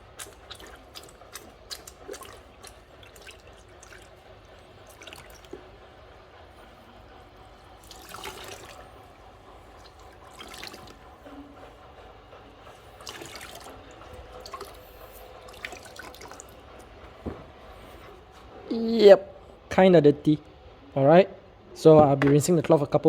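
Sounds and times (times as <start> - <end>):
cloth rinsed and squeezed in water: 0.0 - 11.8, 12.7 - 18.2.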